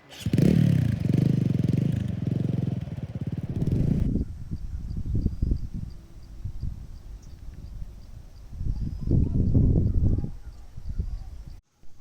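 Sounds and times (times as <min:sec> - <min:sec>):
motorcycle engine running: 0:00.0 - 0:04.2.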